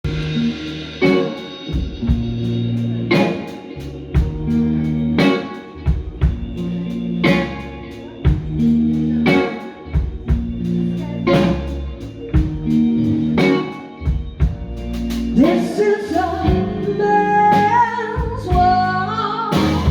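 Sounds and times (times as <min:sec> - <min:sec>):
heavy accented band hits: 0:00.0 - 0:07.7
bass notes: 0:00.0 - 0:19.9
drum kit: 0:00.0 - 0:19.9
electric guitar: 0:00.0 - 0:19.9.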